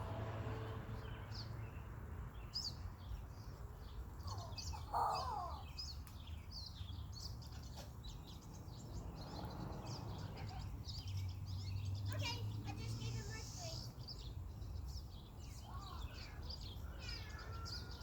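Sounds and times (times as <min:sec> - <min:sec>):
songbirds chirping: 0:00.0 - 0:18.0
low bird call: 0:04.2 - 0:06.0.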